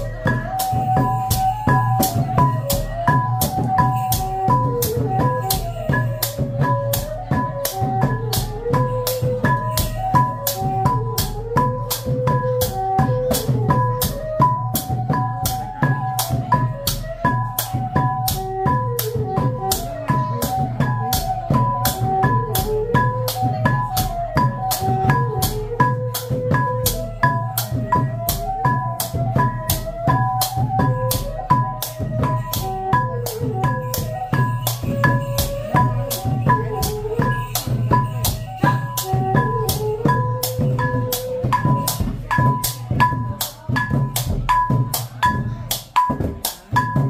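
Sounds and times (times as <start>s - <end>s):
drums: 0.0s - 47.0s
wavering melody: 0.0s - 47.0s.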